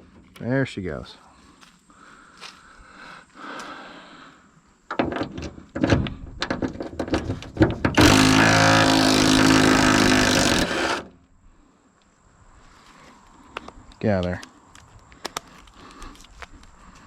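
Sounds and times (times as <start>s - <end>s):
mechanical whir: 8.0s - 11.1s.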